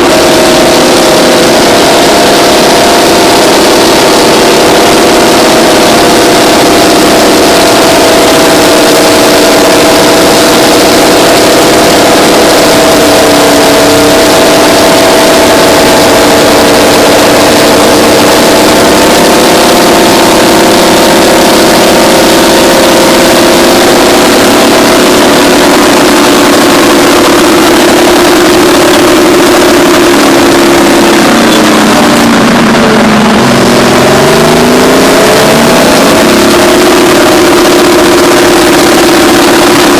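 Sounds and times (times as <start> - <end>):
bulldozer diesel engines running hard: 0.0 - 39.9.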